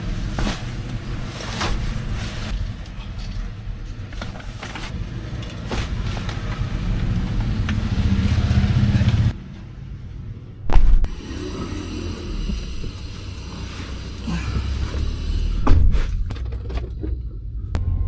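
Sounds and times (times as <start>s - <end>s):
road noise: 0.0s - 18.0s
vehicle engine running: 0.0s - 18.0s.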